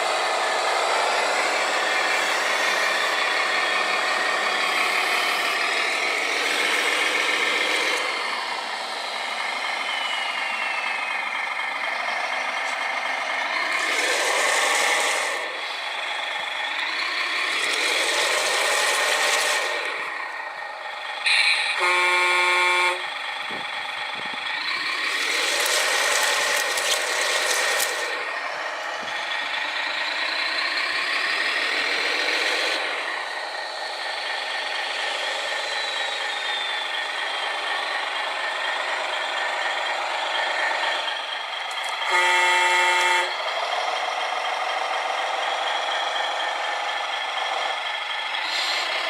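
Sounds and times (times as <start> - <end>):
toy truck horn blasts: 21.2 - 23.1, 41.8 - 43.4.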